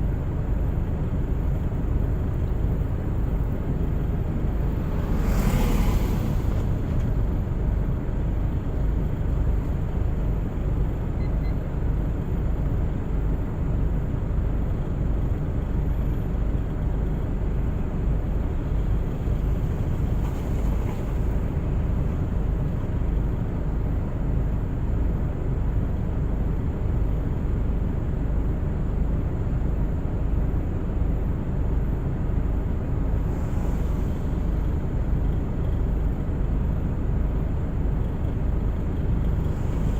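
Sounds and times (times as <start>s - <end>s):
car engine and tyre noise: 0.0s - 39.9s.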